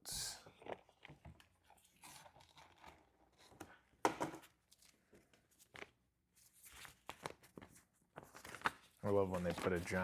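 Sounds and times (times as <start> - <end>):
paper rustling and crinkling: 4.7 - 10.0.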